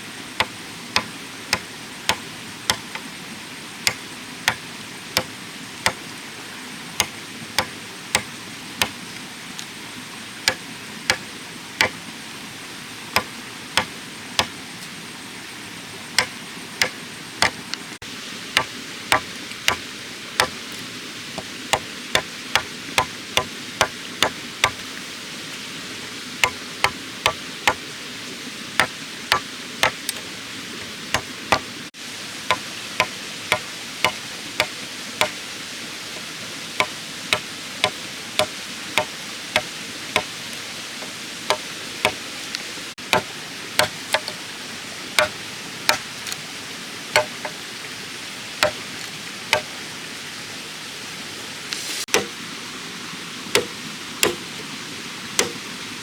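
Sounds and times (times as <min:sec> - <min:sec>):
tool striking bamboo: 0:00.4 - 0:03.1, 0:03.8 - 0:06.1, 0:07.0 - 0:09.0, 0:10.4 - 0:12.0, 0:13.2 - 0:14.6, 0:16.2 - 0:17.8, 0:18.6 - 0:20.7, 0:21.4 - 0:24.8, 0:26.4 - 0:27.8, 0:28.8 - 0:31.7, 0:32.5 - 0:35.4, 0:36.8 - 0:40.4, 0:41.0 - 0:42.2, 0:43.0 - 0:44.4, 0:45.2 - 0:46.4, 0:47.2 - 0:47.6, 0:48.6 - 0:48.8, 0:52.1 - 0:52.4, 0:53.5 - 0:54.6, 0:55.4 - 0:55.6.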